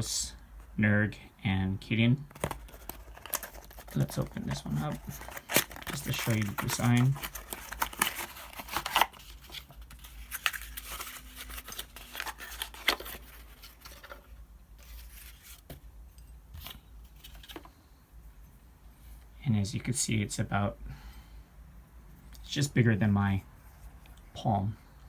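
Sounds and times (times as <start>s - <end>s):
packaging crinkling and tearing: 2.3s - 15.6s.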